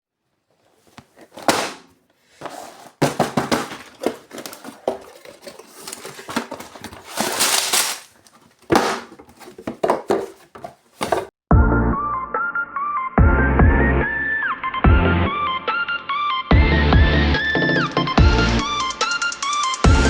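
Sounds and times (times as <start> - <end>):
cardboard box rustling and knocks: 0.6 - 11.3
packaging tearing: 2.5 - 11.2.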